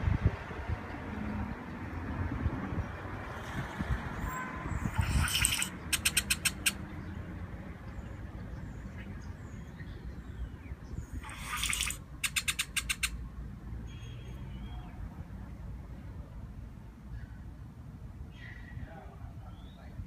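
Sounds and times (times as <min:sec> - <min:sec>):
bird calling with hiss and clicks: 0:05.0 - 0:06.8, 0:11.2 - 0:13.1.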